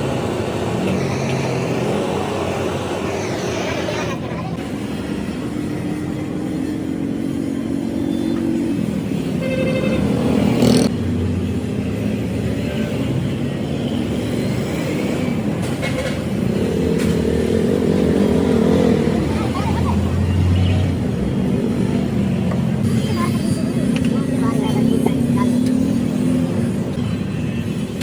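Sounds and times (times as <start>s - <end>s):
vehicle engines passing: 0.0s - 28.0s
car horn toot: 9.4s - 10.4s.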